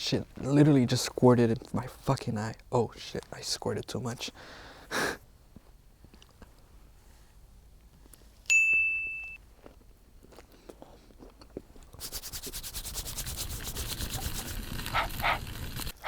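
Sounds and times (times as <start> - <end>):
bright ding: 8.5 - 9.4.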